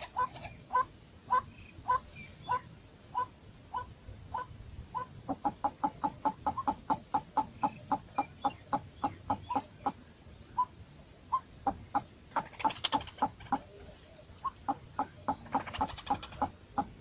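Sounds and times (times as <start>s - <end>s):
birds calling: 0.0s - 17.0s.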